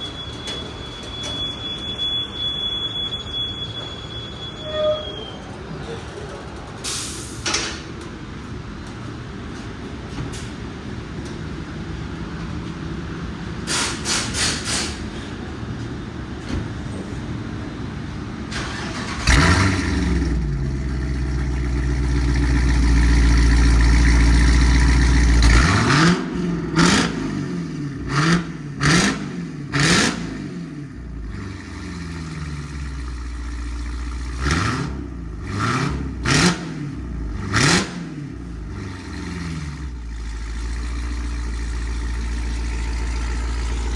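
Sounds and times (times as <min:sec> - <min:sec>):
car engine starting and idling: 0:05.5 - 0:43.9
engine revving: 0:18.6 - 0:33.0, 0:34.2 - 0:43.9.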